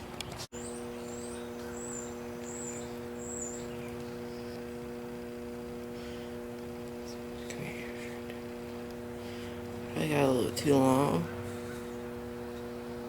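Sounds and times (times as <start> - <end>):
electrical hum: 0.0 - 13.0
faint high bird chirps: 0.6 - 4.7.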